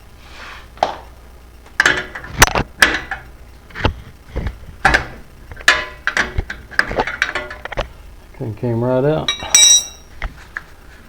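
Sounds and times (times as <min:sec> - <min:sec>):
wrench clinking on metal: 0:09.3 - 0:10.1.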